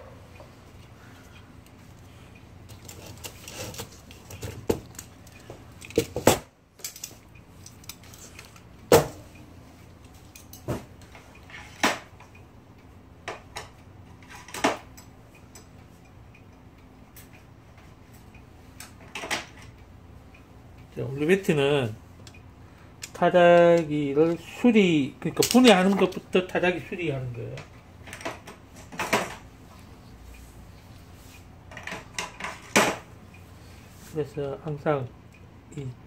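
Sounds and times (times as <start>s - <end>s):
small metal parts clicking and clinking: 6.8s - 8.7s.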